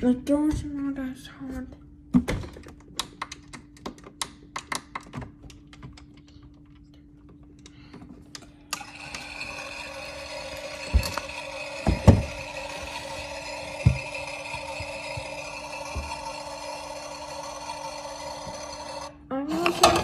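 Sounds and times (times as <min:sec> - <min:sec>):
toy washing machine whirring: 0:08.4 - 0:20.0
heavy thumps: 0:09.3 - 0:17.1.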